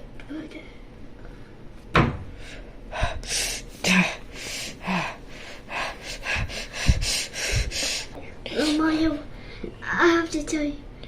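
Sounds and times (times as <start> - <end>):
child gasping and huffing: 2.4 - 9.6.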